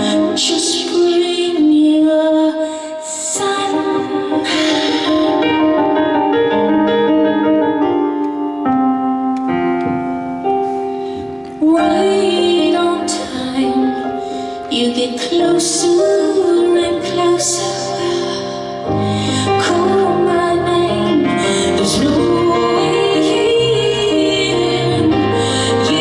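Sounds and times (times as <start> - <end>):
woman singing: 0.0 - 5.5, 11.5 - 26.0
piano accompaniment: 0.0 - 26.0.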